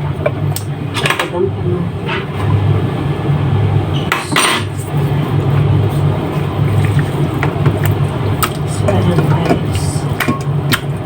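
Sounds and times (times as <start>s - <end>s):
steady low hum: 0.0s - 11.0s
utensils and dishes clinking: 3.9s - 4.8s.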